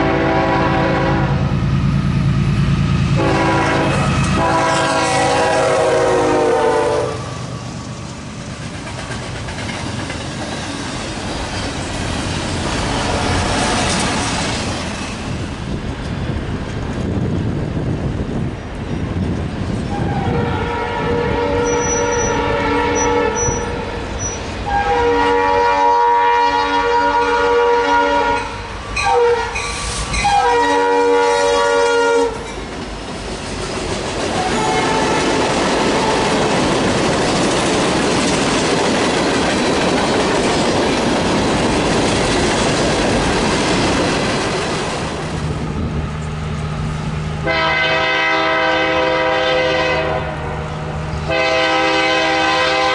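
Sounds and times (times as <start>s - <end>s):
locomotive air horn: 0.0s - 1.6s, 3.2s - 7.4s, 12.8s - 14.2s, 19.9s - 32.5s, 34.4s - 35.4s, 47.4s - 52.9s
wheels clicking over rail joints: 8.0s - 12.9s, 32.4s - 45.4s.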